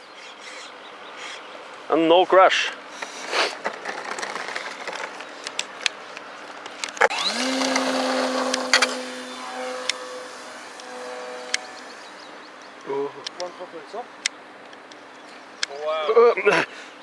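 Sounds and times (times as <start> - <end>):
electric motor whining: 7.0 - 13.6.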